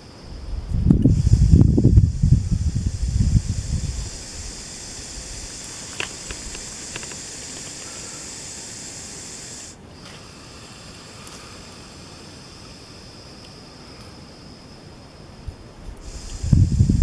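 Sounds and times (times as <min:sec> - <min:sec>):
snake hissing: 0:00.3 - 0:15.3, 0:16.0 - 0:17.0
faint clicks: 0:03.8 - 0:09.0, 0:11.2 - 0:11.6, 0:13.4 - 0:14.2.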